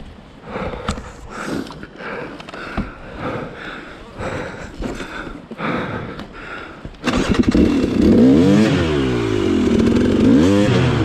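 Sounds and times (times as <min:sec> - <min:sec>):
two-stroke dirt bike engine revving: 0:07.0 - 0:11.0.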